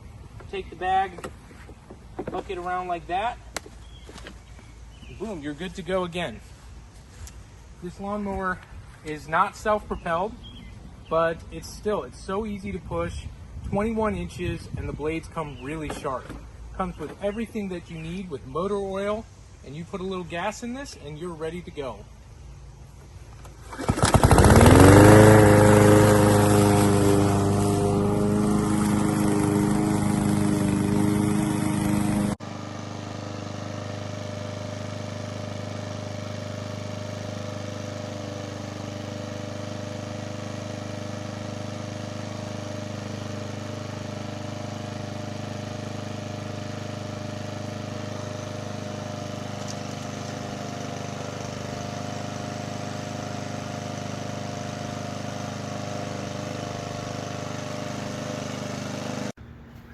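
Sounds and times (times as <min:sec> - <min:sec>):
lawn mower engine running: 0:23.3 - 0:59.9.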